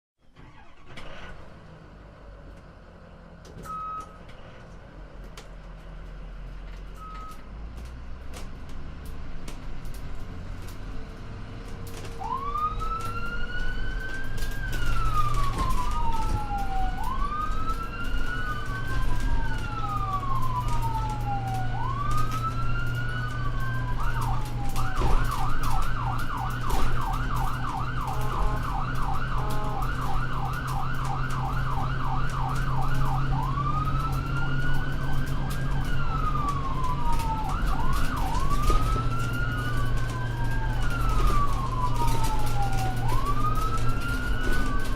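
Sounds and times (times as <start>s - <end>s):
ambulance siren: 0.4s - 1.3s, 3.6s - 4.2s, 11.9s - 44.9s
vehicle engine humming: 0.4s - 44.9s.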